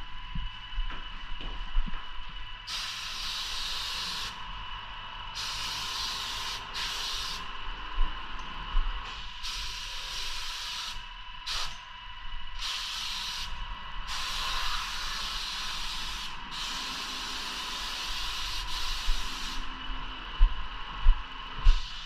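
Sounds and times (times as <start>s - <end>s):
faint steady whine: 0.0s - 22.0s
spray gun hissing: 2.7s - 4.4s, 5.4s - 7.5s, 9.2s - 11.8s, 12.6s - 19.7s, 21.7s - 22.0s.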